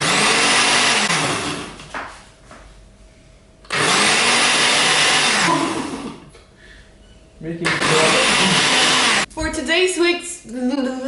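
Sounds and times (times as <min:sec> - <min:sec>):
loud motor whirring: 0:00.0 - 0:01.8, 0:03.7 - 0:06.2, 0:07.6 - 0:09.3.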